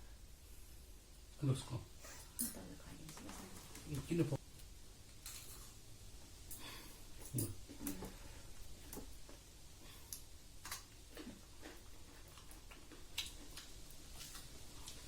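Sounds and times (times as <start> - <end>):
chewing and mouth smacks: 8.8 - 15.0.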